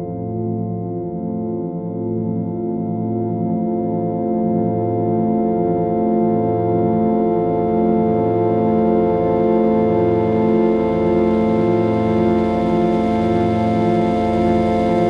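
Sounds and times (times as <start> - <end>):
organ-like synthesized drone: 7.2 - 15.0.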